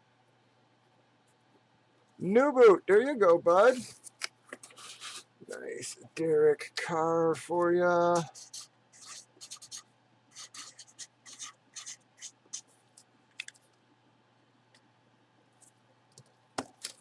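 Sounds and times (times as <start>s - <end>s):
marker writing: 8.1s - 12.7s.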